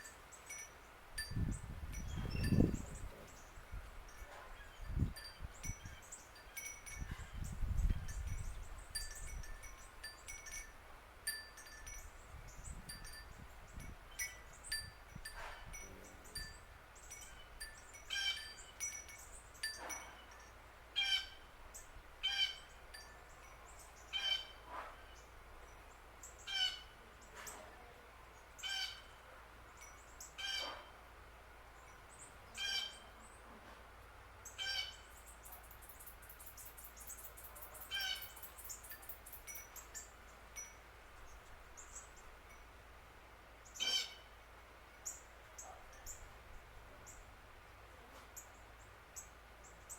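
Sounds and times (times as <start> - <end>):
wind chimes ringing: 0.0 - 20.7, 22.6 - 23.9, 37.4 - 40.9.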